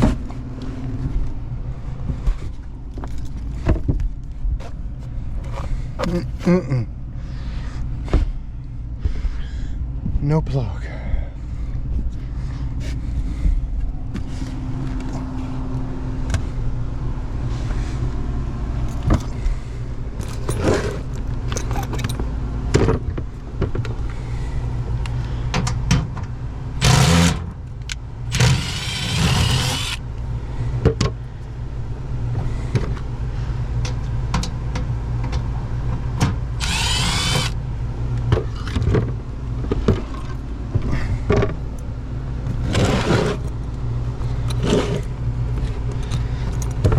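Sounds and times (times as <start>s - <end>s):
air conditioning unit humming: 0.0s - 46.9s
rustling handling noises: 2.5s - 6.6s.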